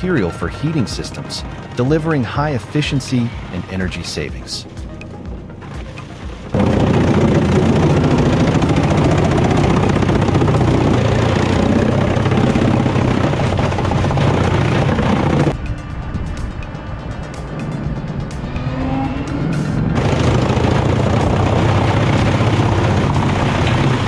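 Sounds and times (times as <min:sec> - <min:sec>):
background music: 0:00.0 - 0:24.0
log-processing machine running: 0:00.0 - 0:24.0.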